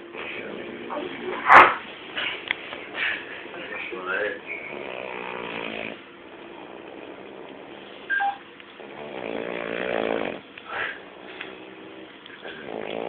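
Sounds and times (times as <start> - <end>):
man snoring: 4.7 - 6.0, 8.8 - 10.4, 12.6 - 13.0.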